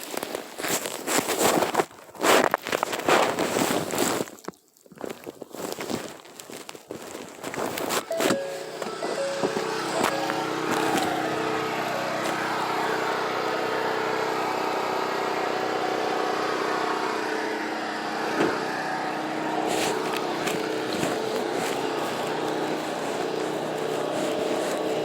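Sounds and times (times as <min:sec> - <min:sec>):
mechanical hum with low tones: 0:08.1 - 0:25.0.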